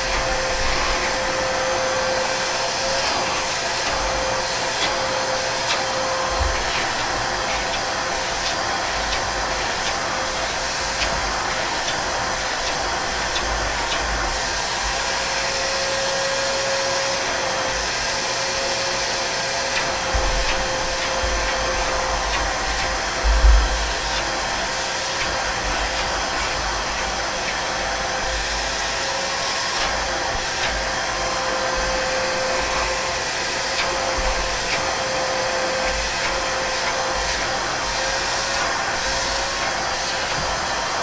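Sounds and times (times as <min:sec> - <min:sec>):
vacuum cleaner running: 0:00.0 - 0:41.0.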